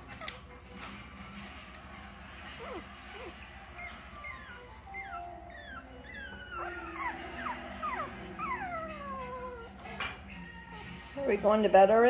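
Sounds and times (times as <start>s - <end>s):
puppies whimpering and squealing: 2.1s - 11.2s.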